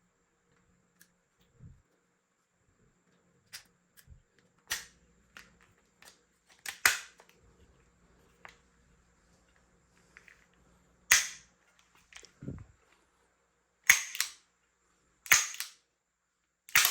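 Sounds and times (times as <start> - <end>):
toy gun clicks and snaps: 4.7 - 7.4, 11.1 - 11.5, 13.9 - 14.5, 15.2 - 15.9, 16.7 - 16.9.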